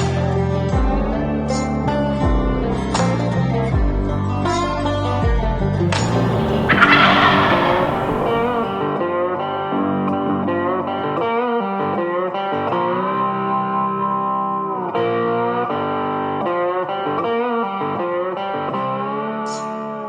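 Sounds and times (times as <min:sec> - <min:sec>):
guitar music with bending notes: 0:05.9 - 0:08.9.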